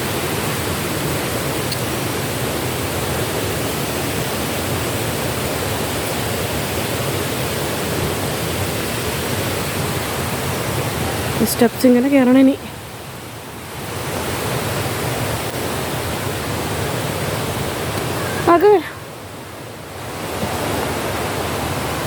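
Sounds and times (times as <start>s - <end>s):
stream water rushing: 0.0s - 22.0s.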